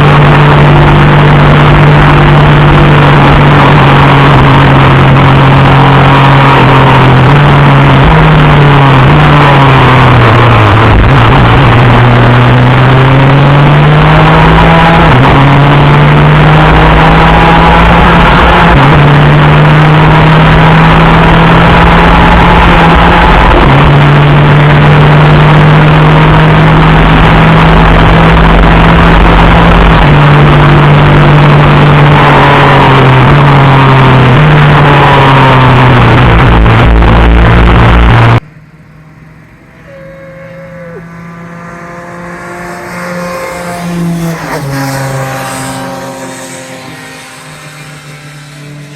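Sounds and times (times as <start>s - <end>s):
racing engine shifting gears: 0.0s - 48.9s.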